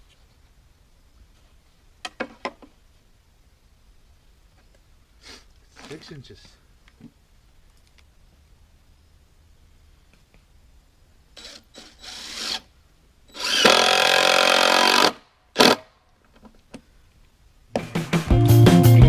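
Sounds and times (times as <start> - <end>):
screw gun driving screw into wood: 11.4 - 12.7, 13.3 - 15.9
rock guitar music: 17.8 - 19.0.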